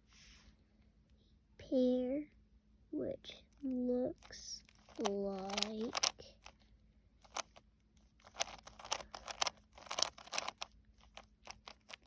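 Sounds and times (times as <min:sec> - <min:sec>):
plastic puzzle cube clicking: 0:04.7 - 0:06.6, 0:07.2 - 0:07.6, 0:08.2 - 0:12.0.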